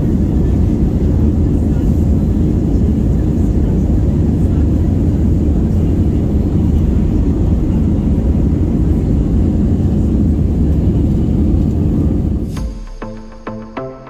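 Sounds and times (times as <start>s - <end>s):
airliner cabin engine rumble: 0.0s - 12.6s
music: 12.4s - 14.0s.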